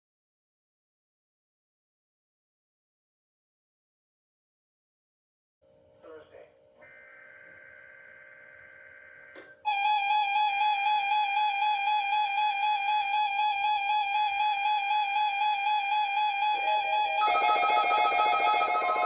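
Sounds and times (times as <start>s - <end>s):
sustained synth notes: 17.2s - 19.0s.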